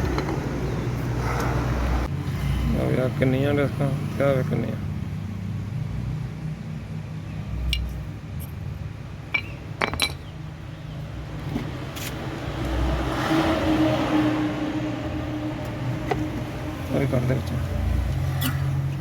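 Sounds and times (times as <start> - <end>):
vehicle running close by: 0.0 - 6.6, 11.3 - 19.0
metal brake parts clinking: 9.3 - 10.4.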